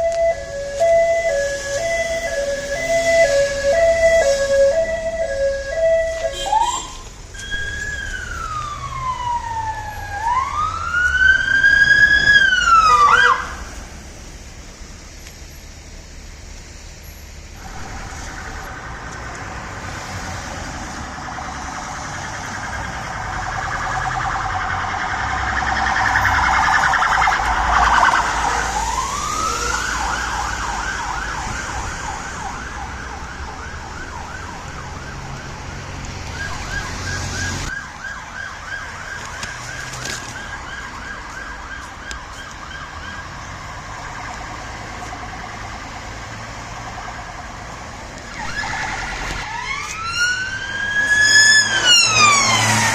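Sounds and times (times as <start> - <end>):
police siren wailing and yelping: 0.0 - 13.6, 17.6 - 52.9
low rumble: 17.5 - 21.0.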